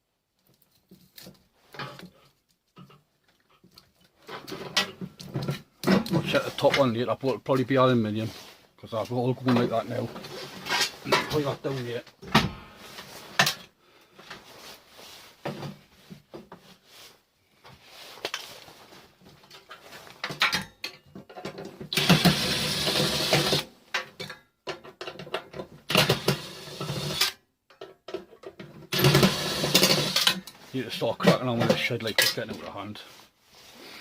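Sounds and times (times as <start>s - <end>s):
scraping at metal parts: 8.2s - 11.9s, 28.9s - 32.9s
metal parts knocking and clattering: 23.2s - 30.6s.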